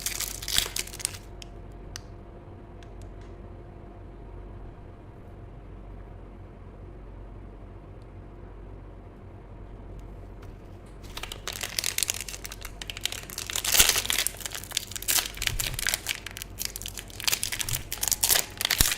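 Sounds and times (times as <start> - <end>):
plastic packaging crinkling: 0.0 - 1.4, 11.0 - 18.9.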